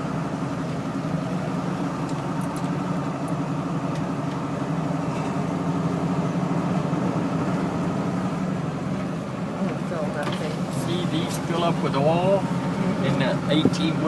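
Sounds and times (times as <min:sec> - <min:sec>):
car driving interior drone: 0:00.0 - 0:14.0.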